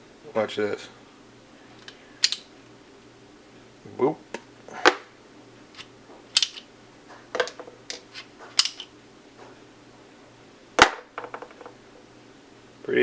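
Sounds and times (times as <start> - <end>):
steel sockets clicking on plastic rail: 1.8 - 2.4, 6.4 - 6.6, 7.4 - 8.9.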